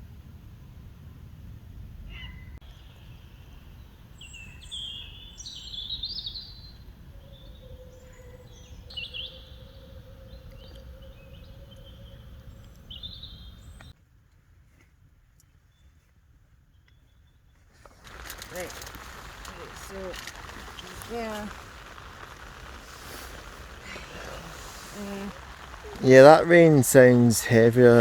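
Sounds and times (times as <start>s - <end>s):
songbirds singing: 2.1s - 13.9s, 16.7s - 28.0s
steady low rumble: 18.3s - 28.0s.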